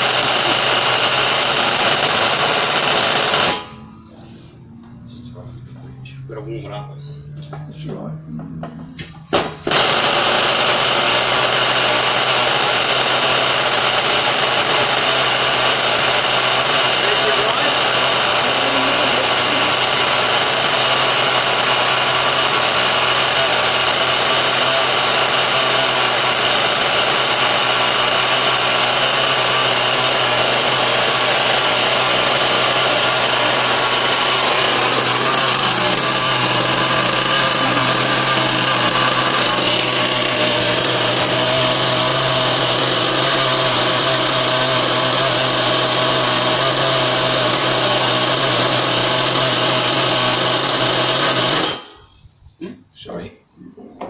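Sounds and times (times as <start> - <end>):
model car nitro engine running: 0.0 - 3.8, 9.4 - 52.1.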